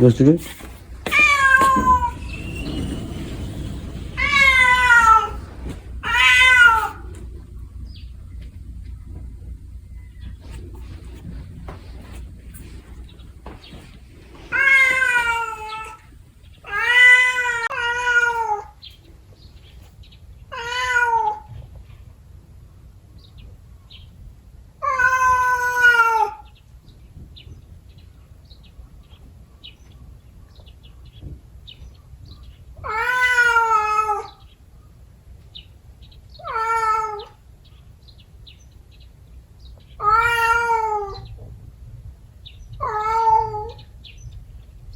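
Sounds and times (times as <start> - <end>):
cat yowling: 1.0 - 7.4, 14.5 - 18.8, 20.5 - 21.5, 24.8 - 26.5, 32.8 - 34.5, 36.4 - 37.4, 40.0 - 41.4, 42.8 - 44.0.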